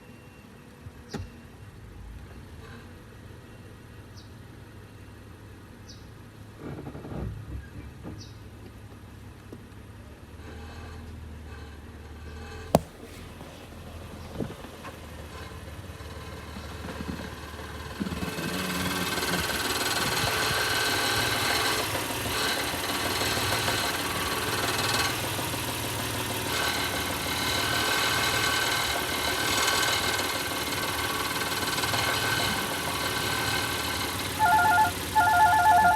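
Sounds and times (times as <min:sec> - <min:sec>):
car engine running: 0:12.3 - 0:35.9.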